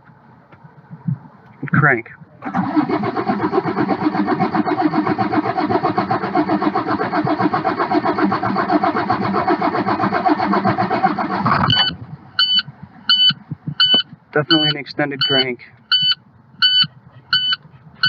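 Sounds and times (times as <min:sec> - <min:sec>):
starter cranking diesel engine: 0:02.4 - 0:12.5
short electronic beeps: 0:11.5 - 0:17.6.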